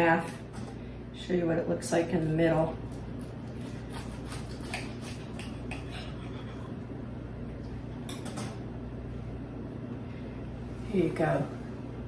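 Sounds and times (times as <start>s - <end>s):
steady low hum: 0.0s - 12.0s
knife crunching through fried chicken: 3.0s - 6.5s.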